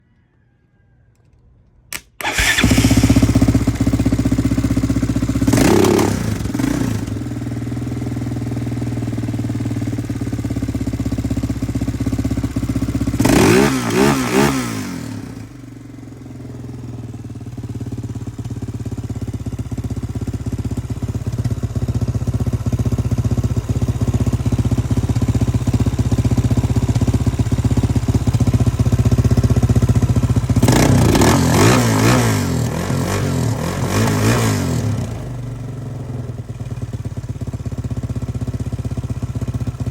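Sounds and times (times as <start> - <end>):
engine starting and idling: 2.0 - 4.6
engine revving: 2.2 - 4.0, 5.5 - 7.2, 13.2 - 15.5, 30.5 - 35.4.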